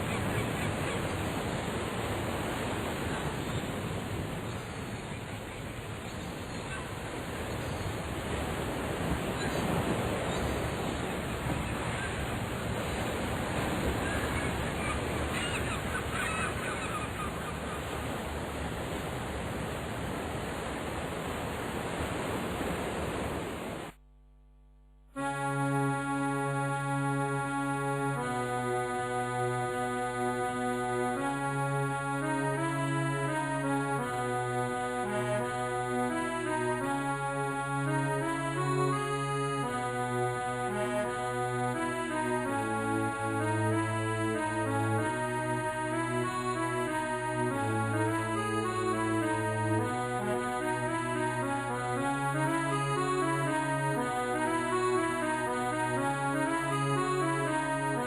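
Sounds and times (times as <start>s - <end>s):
birds calling: 0.0s - 8.1s, 8.9s - 18.2s
ocean surf: 0.0s - 23.9s
keyboard music: 25.1s - 58.0s.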